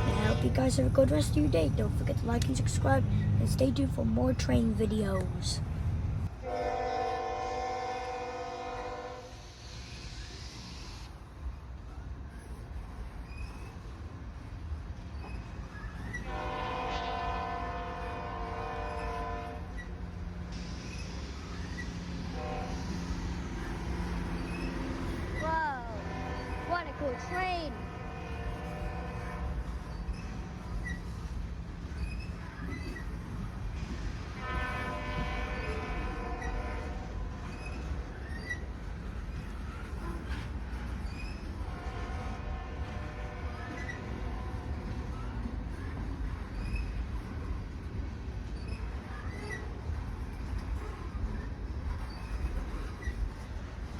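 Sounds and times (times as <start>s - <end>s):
passing train rumbling: 0.0s - 53.9s
train air horn blast: 6.4s - 9.4s, 16.2s - 19.7s, 22.3s - 23.0s, 26.0s - 29.6s, 34.4s - 37.2s, 41.7s - 44.5s.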